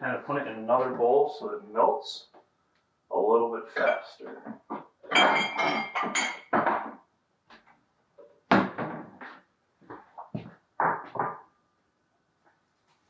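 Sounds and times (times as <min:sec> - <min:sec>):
bowls knocking and clunking: 0:03.8 - 0:07.1.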